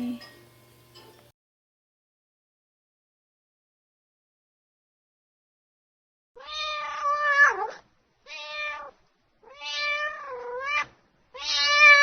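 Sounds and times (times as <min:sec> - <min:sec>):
cat meowing: 0:06.4 - 0:12.0.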